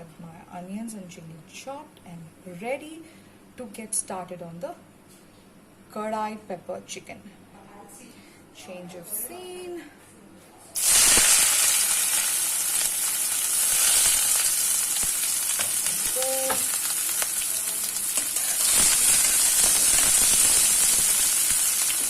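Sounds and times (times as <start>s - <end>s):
onions sizzling in hot oil: 10.8s - 22.0s.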